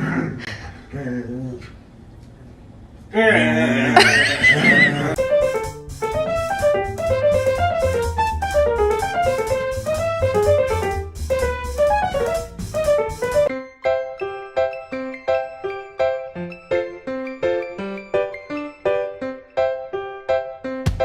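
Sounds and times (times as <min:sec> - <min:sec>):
bouncy piano tune with drums: 0:05.1 - 0:21.0.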